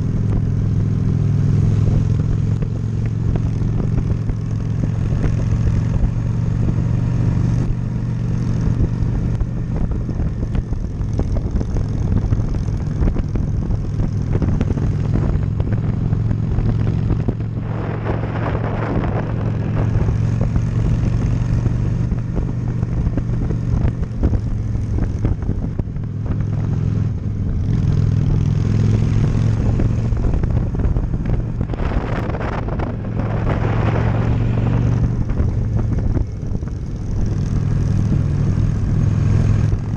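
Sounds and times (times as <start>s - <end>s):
motorcycle engine running: 0.0s - 39.9s
rushing noise: 17.5s - 20.8s.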